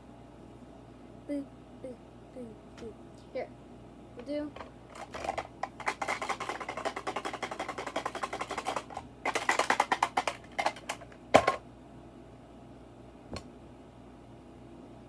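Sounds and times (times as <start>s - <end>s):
fidget toy rapid clicking: 4.6s - 11.6s.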